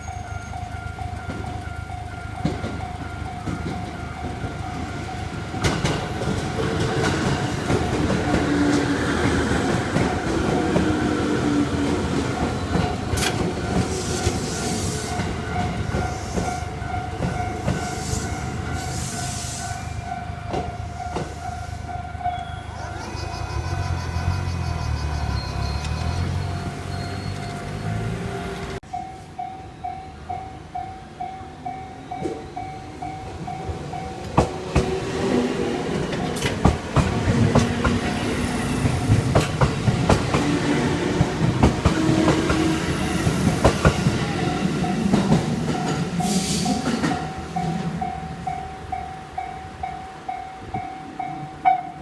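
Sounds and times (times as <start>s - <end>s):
level-crossing warning bell: 0.0s - 52.0s
train wheels clattering: 2.4s - 19.6s, 33.2s - 47.9s.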